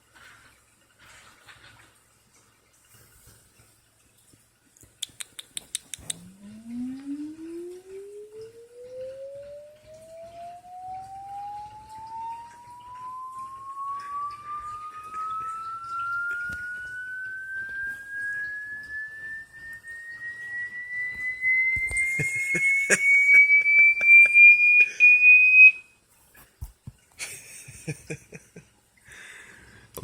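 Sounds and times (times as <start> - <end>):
rising electronic tone: 6.0 - 25.8.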